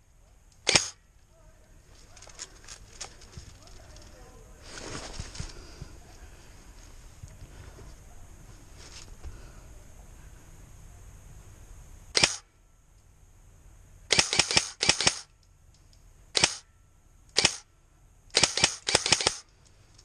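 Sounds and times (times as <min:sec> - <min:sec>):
airsoft gun shots: 0:00.6 - 0:01.0, 0:12.1 - 0:12.5, 0:14.1 - 0:15.3, 0:16.4 - 0:16.7, 0:17.4 - 0:17.7, 0:18.4 - 0:19.4.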